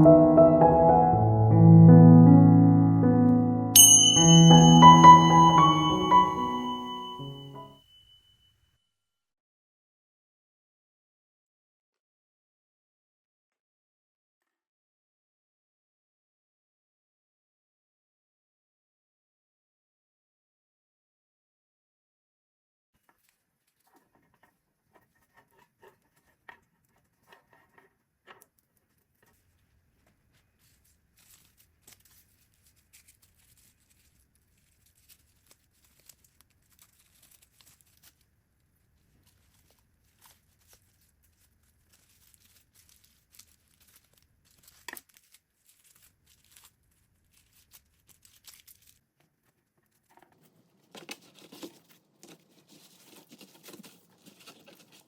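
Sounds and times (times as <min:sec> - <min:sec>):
dry material crinkling and tearing: 0:30.0 - 0:49.1, 0:50.0 - 0:55.0.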